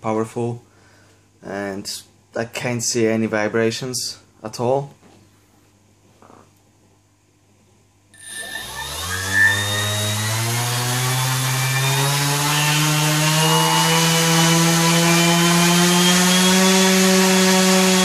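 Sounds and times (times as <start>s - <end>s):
electric motor whine: 8.2s - 18.0s.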